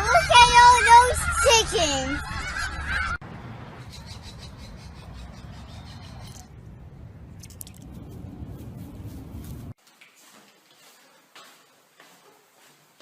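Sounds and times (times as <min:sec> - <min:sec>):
geese honking: 0:00.0 - 0:03.2
low rumble: 0:05.0 - 0:09.8.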